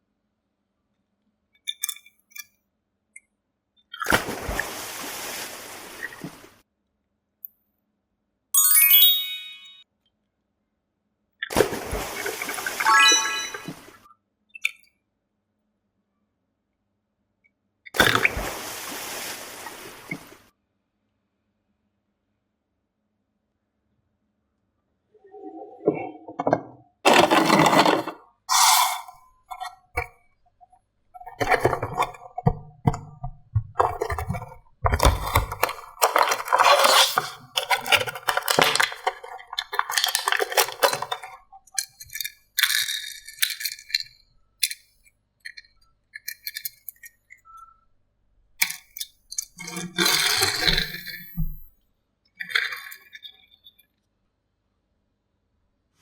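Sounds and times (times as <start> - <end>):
toys clinking and rattling: 27.1 - 29.7, 33.8 - 44.9, 45.5 - 47.5.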